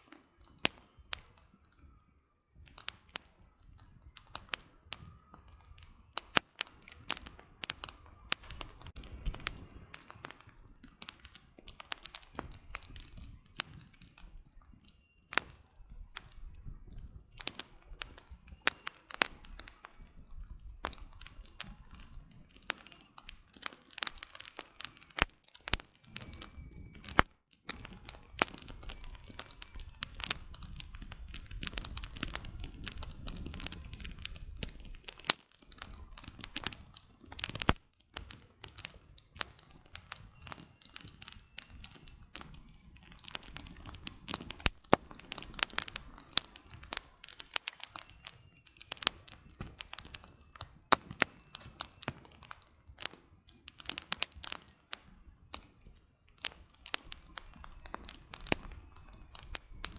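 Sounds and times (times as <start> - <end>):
firewood crackling and popping: 0.0 - 59.9
low rush of flame: 2.6 - 50.4.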